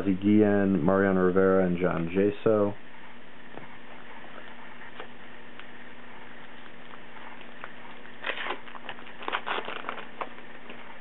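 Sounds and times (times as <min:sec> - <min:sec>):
wrapper rustling and crinkling: 0:08.2 - 0:10.8.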